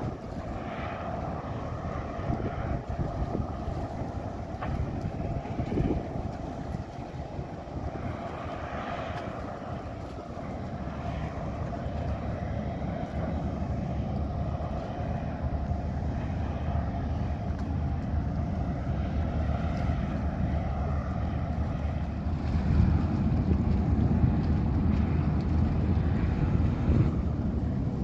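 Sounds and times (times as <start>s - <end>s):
ferry engines rumbling: 0.0s - 28.0s.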